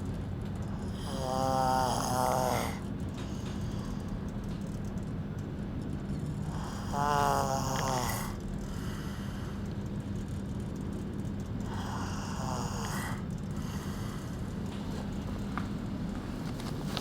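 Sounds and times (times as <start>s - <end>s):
person snoring: 0.8s - 2.8s, 6.4s - 9.6s, 11.6s - 14.3s
steady low rumble: 2.7s - 17.0s.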